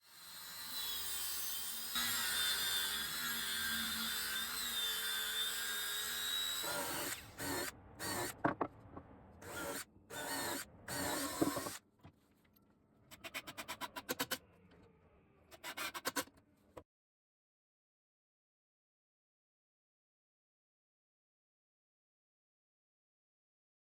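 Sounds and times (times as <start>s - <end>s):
power tool running on wood: 0.1s - 8.3s
drill bursts: 0.2s - 8.3s, 9.4s - 11.8s.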